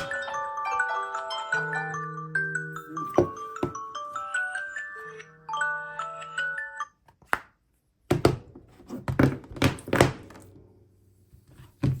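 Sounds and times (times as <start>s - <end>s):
phone alarm marimba melody: 0.0s - 7.0s.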